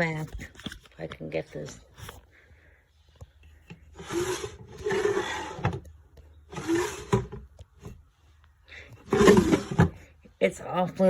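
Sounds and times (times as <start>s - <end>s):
wooden drawer scraping: 3.9s - 5.9s, 6.5s - 8.0s, 9.0s - 10.0s.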